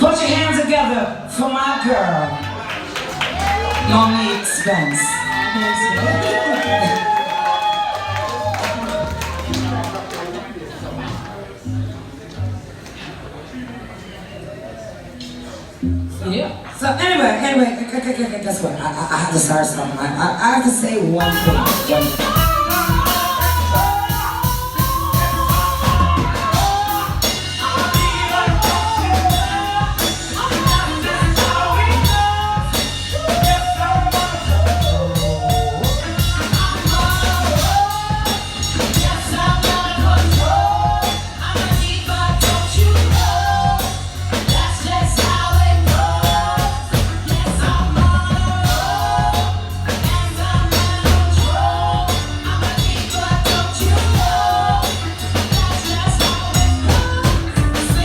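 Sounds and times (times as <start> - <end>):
live band with drums and bass: 0.0 - 11.9, 21.2 - 58.0
woman singing: 16.9 - 58.0.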